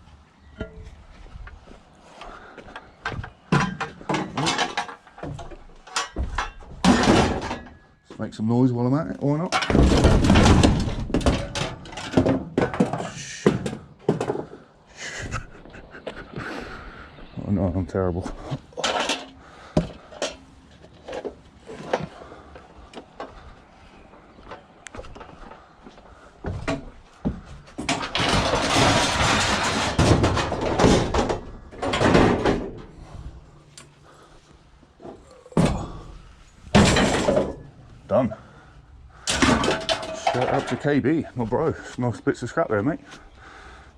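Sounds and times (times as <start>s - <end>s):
scrap metal knocking and clunking: 0.4s - 8.1s, 9.3s - 14.7s, 18.3s - 23.5s, 24.4s - 41.8s
loud metal bangs: 9.6s - 13.8s.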